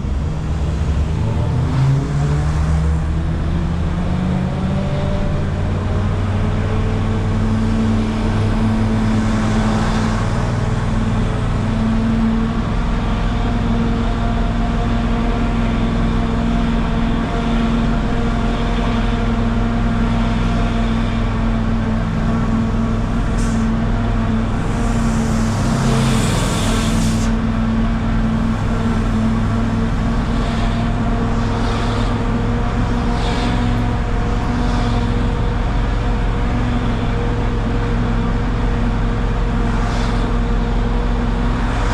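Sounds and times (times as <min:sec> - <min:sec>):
minibus engine running: 0:00.0 - 0:41.9
rushing hiss: 0:24.6 - 0:27.4.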